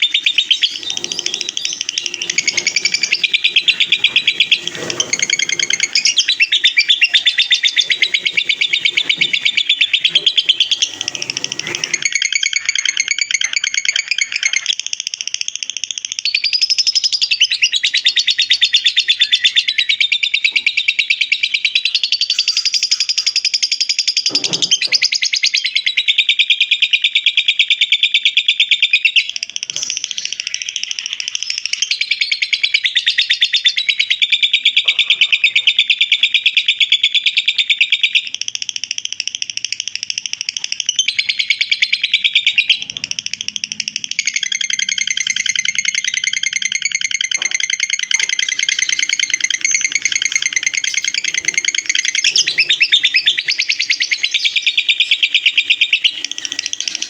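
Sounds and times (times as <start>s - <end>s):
lovebird chattering trills: 0.0s - 24.0s, 29.0s - 57.0s.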